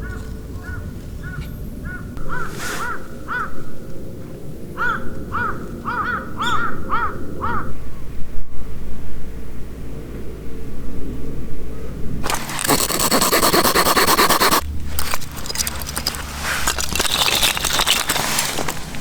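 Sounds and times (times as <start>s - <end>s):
crow cawing: 4.8s - 7.7s.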